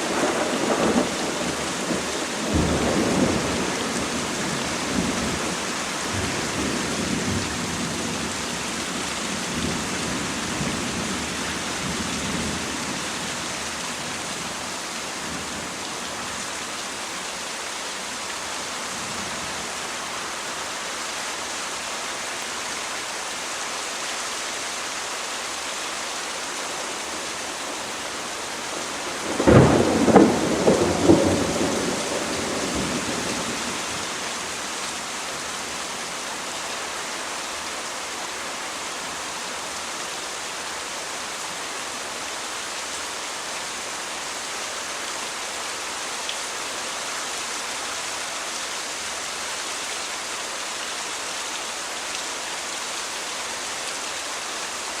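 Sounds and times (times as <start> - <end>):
rain hissing: 0.0 - 55.0
rolling thunder: 29.1 - 34.0
loud thunderclap: 29.2 - 33.0.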